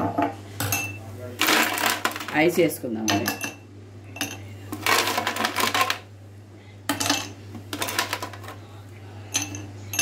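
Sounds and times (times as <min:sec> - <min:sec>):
ice cubes clattering and clinking: 0:01.4 - 0:02.4, 0:04.8 - 0:06.0, 0:07.7 - 0:08.6.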